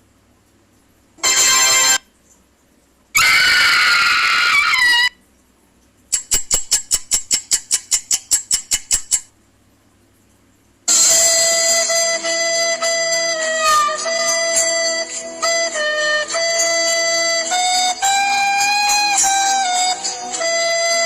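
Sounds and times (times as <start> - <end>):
noisy sound with rising shrill tones: 1.2 - 2.0, 3.2 - 5.2
melodic music clip: 11.0 - 21.0.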